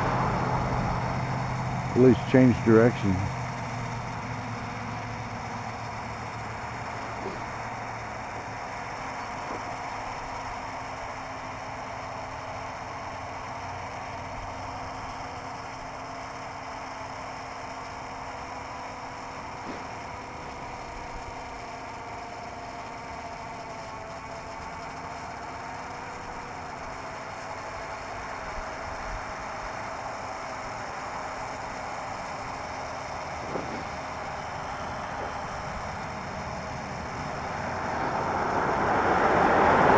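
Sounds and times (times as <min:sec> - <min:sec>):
distant drone motors humming: 0:00.0 - 0:39.9
wind: 0:00.0 - 0:39.9.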